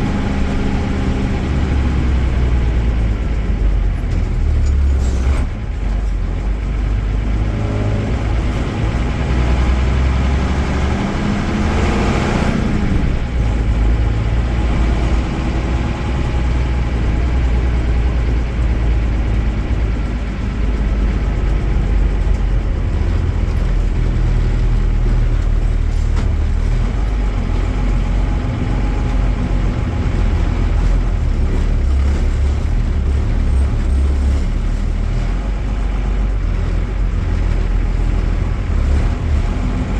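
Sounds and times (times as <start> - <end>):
diesel coach engine rumbling: 0.0 - 39.9.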